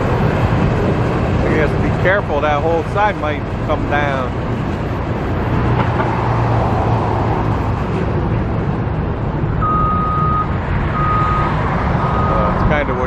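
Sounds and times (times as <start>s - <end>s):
reversing alarm beeps: 9.6s - 12.5s.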